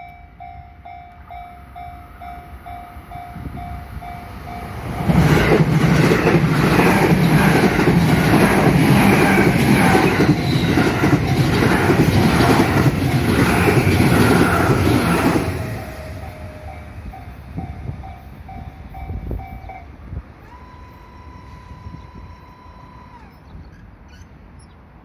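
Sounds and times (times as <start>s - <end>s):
level crossing warning bell: 0.0s - 8.0s, 15.7s - 23.2s
train wheels clattering: 3.2s - 19.6s.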